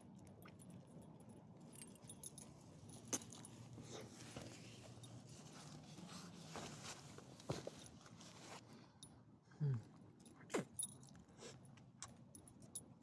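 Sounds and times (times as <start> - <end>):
metallic jingling and clinking: 0.6 - 3.6.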